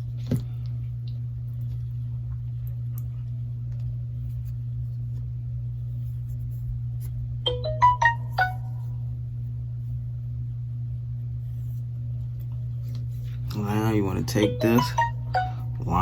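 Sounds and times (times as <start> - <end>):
steady low hum: 0.0 - 16.0
phone notification tone: 7.5 - 8.9, 14.4 - 15.8.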